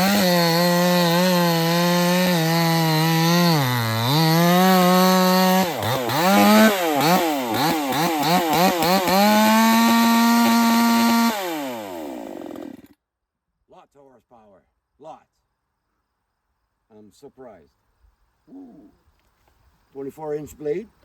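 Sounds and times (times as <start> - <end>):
chainsaw engine revving: 0.0 - 13.0.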